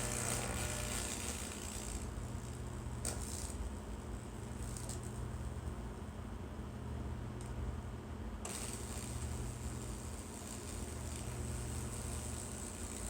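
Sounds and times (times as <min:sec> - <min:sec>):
electrical crackle: 0:00.0 - 0:05.2, 0:08.5 - 0:13.0
electrical sizzle from arc: 0:00.0 - 0:05.9, 0:08.4 - 0:13.0.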